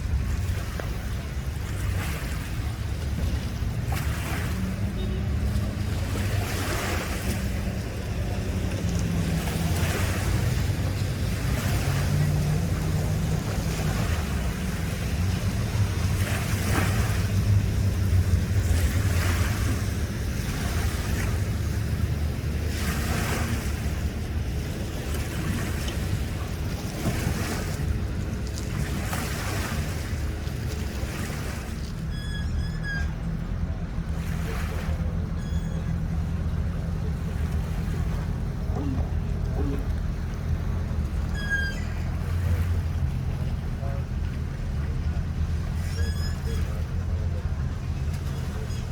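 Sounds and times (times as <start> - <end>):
boat engine running: 0.0 - 48.9
water sloshing: 0.0 - 48.9
high whistling tones: 41.3 - 42.1.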